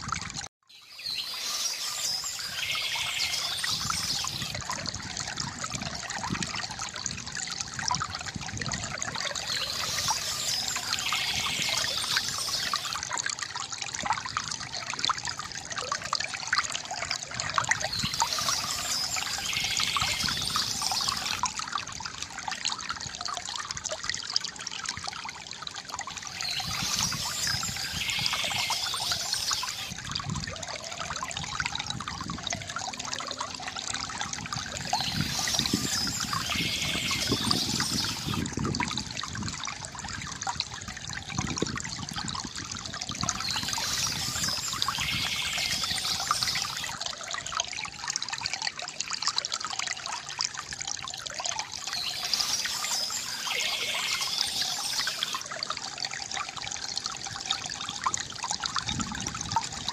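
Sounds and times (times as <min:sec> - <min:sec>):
stream trickling over stones: 0:00.0 - 0:59.9
songbird singing: 0:00.8 - 0:04.6, 0:09.2 - 0:13.0, 0:17.8 - 0:21.4, 0:26.3 - 0:29.9, 0:34.8 - 0:38.4, 0:43.2 - 0:46.9, 0:51.8 - 0:55.4.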